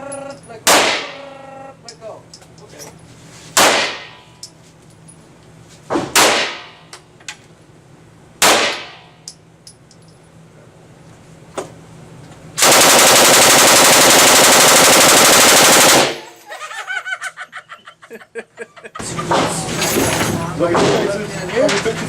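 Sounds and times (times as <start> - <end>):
loud ringing gunshots: 0.7 - 1.2, 3.6 - 4.2, 6.2 - 6.8, 8.4 - 9.1, 12.6 - 16.4
machine gun burst: 12.6 - 16.4.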